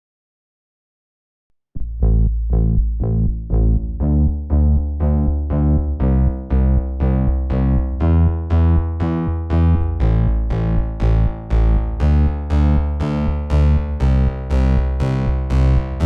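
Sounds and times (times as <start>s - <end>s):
heavy bass: 1.8s - 16.0s
synthesizer and electric piano music: 7.4s - 16.0s.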